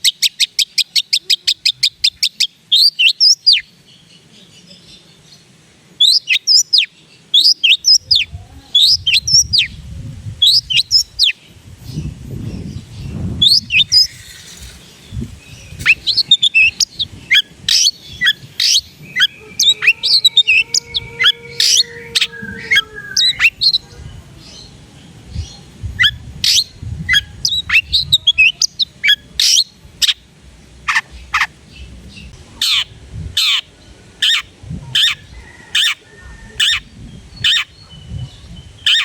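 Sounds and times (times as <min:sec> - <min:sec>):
bird chirping and whistling: 0:06.0 - 0:09.8, 0:10.4 - 0:11.4, 0:13.4 - 0:14.8, 0:15.4 - 0:23.8, 0:37.4 - 0:39.0.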